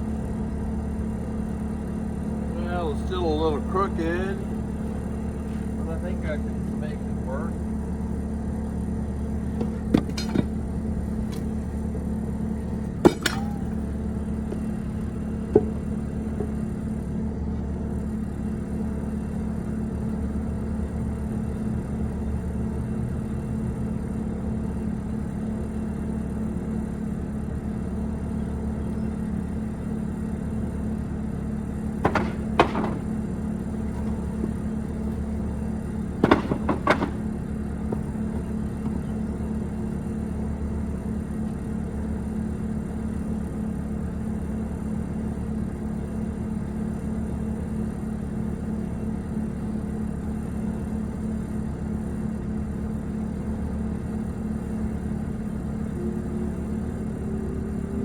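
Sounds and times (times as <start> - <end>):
motor droning: 0.0 - 58.0
sharp knocks: 9.6 - 10.6, 13.0 - 13.8, 15.5 - 16.6, 32.0 - 33.2, 36.2 - 38.5.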